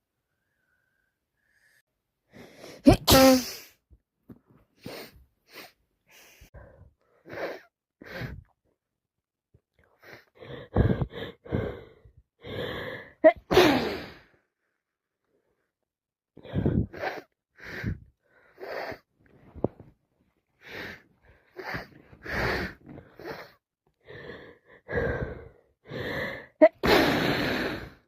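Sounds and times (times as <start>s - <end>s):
person sneezing: 2.8s - 3.8s, 13.3s - 14.1s.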